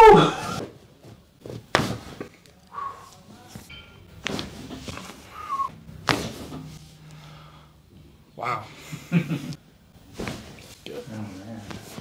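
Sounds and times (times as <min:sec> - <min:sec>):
falling whistle-like tone: 0:05.4 - 0:05.7.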